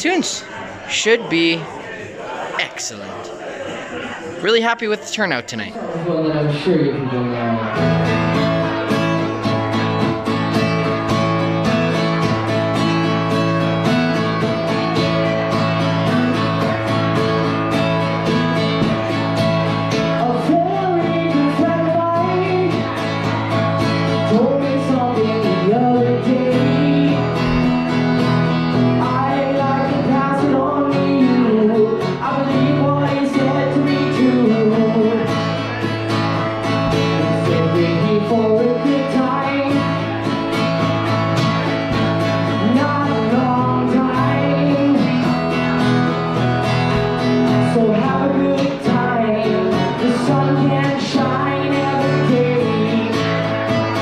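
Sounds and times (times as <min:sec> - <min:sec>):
strummed acoustic guitar: 0:02.4 - 0:54.0
person singing: 0:20.0 - 0:27.8, 0:28.9 - 0:35.9, 0:36.9 - 0:40.6, 0:42.0 - 0:45.8, 0:47.5 - 0:54.0.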